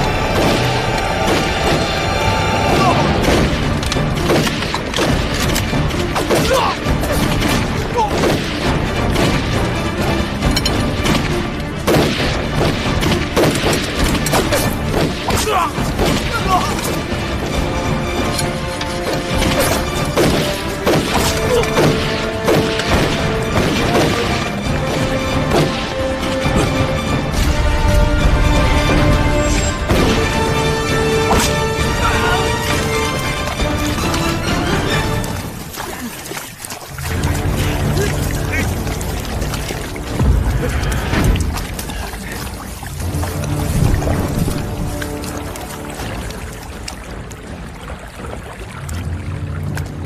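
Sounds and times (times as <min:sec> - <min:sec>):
people shouting: 0:00.0 - 0:03.6, 0:06.2 - 0:07.0, 0:07.8 - 0:08.4, 0:15.2 - 0:17.0, 0:21.0 - 0:22.8, 0:31.2 - 0:35.2, 0:37.6 - 0:38.9
dramatic music score: 0:00.0 - 0:50.0
gunfire: 0:11.8 - 0:15.4.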